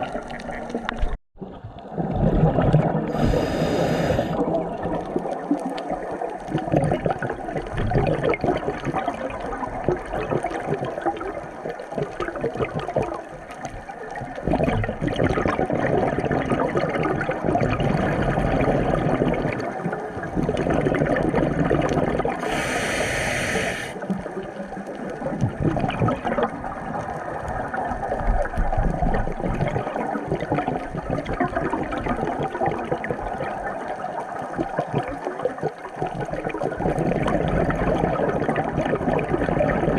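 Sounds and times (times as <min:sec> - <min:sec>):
brief hiss: 0:03.1 - 0:04.4, 0:22.4 - 0:24.0.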